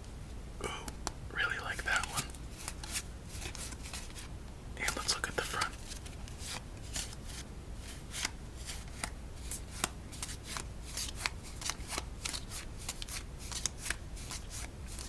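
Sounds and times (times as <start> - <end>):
playing cards clicking and snapping: 1.8 - 4.2, 4.8 - 7.3, 8.1 - 15.0.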